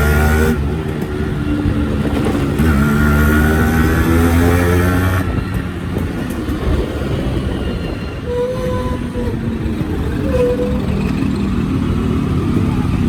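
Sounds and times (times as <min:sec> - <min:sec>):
motorcycle engine revving: 0:00.0 - 0:05.7.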